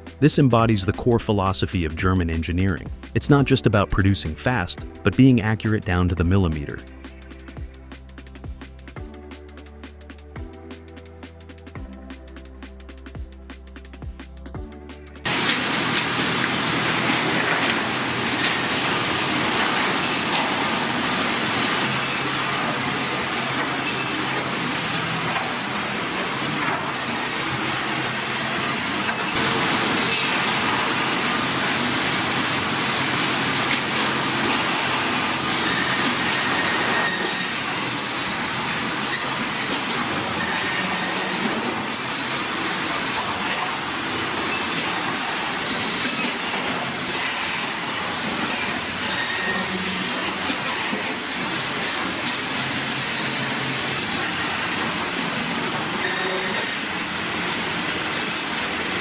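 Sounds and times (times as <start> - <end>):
mechanical clatter and hiss: 25.2 - 29.4, 30.0 - 31.4, 33.2 - 52.6, 53.9 - 55.5.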